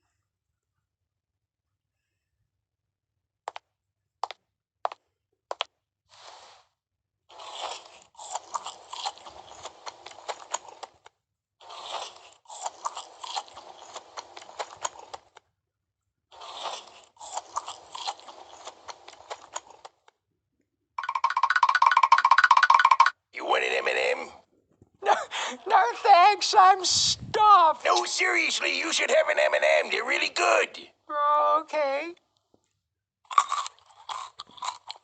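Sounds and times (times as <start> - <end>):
chewing crunchy food: 7.3 - 15.5, 16.3 - 20.2, 32.6 - 35.0.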